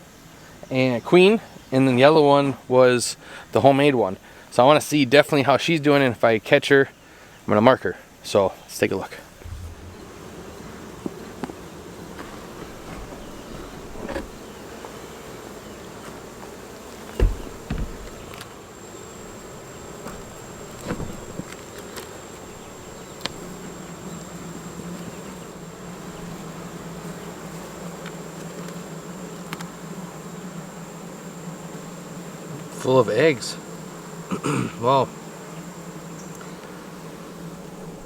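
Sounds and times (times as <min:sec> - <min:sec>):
knocks on beehive: 0:09.4 - 0:10.2, 0:17.1 - 0:18.4
honeybees buzzing: 0:09.4 - 0:38.0.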